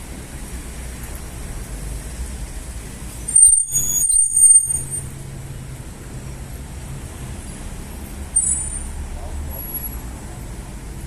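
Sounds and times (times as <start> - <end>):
street traffic rumbling: 0.0 - 11.0
brakes squealing: 2.0 - 10.5.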